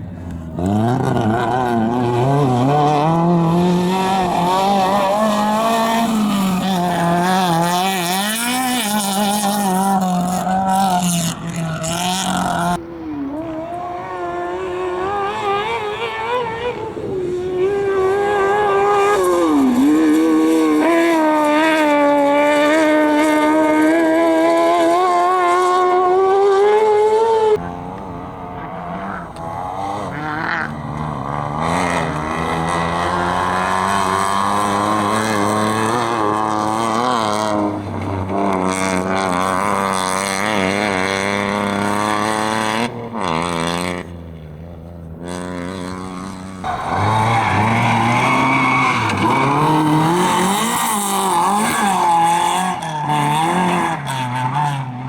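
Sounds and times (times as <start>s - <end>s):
car engine revving hard: 0.0s - 55.0s
tires skidding on dirt: 0.0s - 55.0s.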